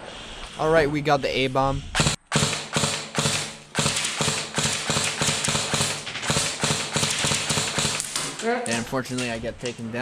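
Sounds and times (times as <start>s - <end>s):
airsoft guns firing: 2.0s - 8.6s.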